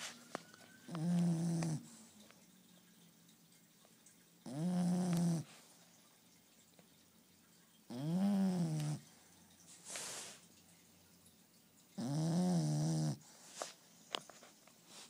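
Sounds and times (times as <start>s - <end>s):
dog snoring: 0.9s - 2.0s, 4.4s - 5.6s, 7.9s - 9.1s, 12.0s - 13.4s.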